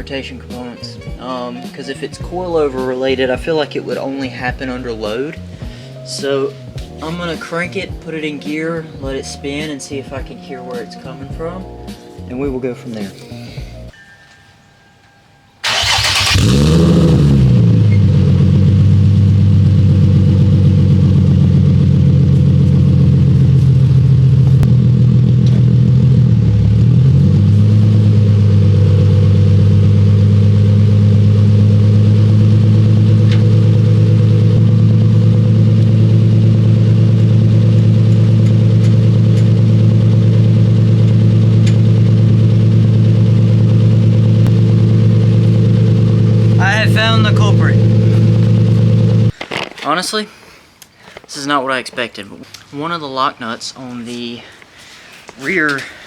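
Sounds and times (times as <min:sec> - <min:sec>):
car engine idling: 0:15.6 - 0:49.4.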